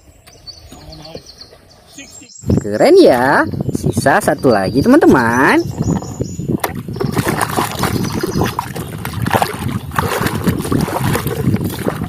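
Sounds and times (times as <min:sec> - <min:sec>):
water sloshing and splashing: 0:05.0 - 0:12.0.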